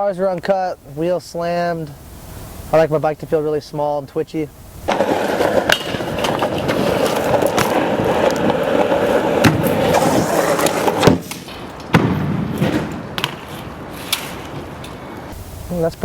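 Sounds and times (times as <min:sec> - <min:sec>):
bike tyres rolling on hard ground: 0:04.9 - 0:15.4
sharp knocks: 0:09.4 - 0:09.8, 0:10.8 - 0:15.0.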